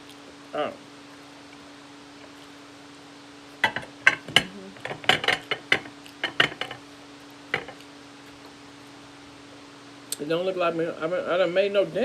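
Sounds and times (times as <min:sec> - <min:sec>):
utensil clinking against dish: 0:03.6 - 0:06.8, 0:07.5 - 0:07.8.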